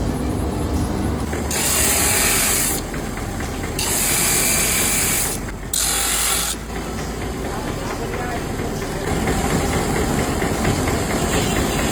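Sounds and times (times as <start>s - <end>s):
machine rumble: 0.0s - 11.9s
power tool grinding: 1.4s - 3.0s, 3.6s - 6.7s.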